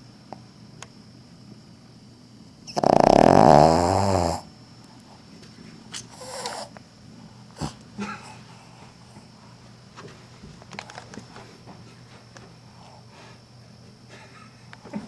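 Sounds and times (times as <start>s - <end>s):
dog snoring: 2.7s - 4.5s, 6.1s - 6.7s
faint breath: 6.1s - 9.6s, 12.6s - 13.5s.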